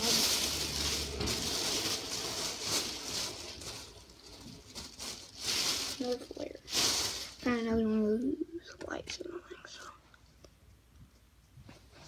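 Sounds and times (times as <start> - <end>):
rummaging through a bag: 0.0 - 7.5.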